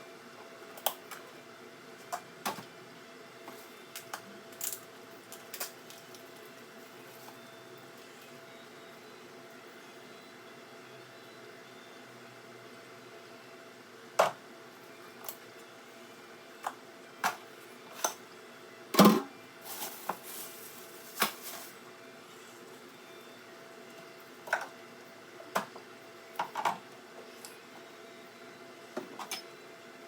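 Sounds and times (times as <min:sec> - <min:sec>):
containers clattering in fridge: 0:19.0 - 0:21.8.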